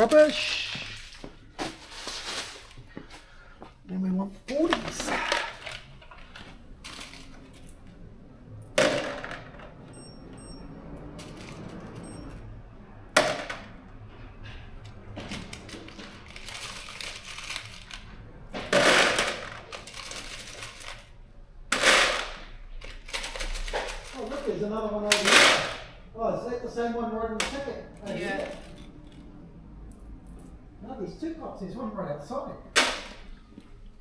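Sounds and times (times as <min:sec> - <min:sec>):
handling noise: 0:00.0 - 0:03.9, 0:04.5 - 0:12.4, 0:13.2 - 0:26.0, 0:27.3 - 0:29.4.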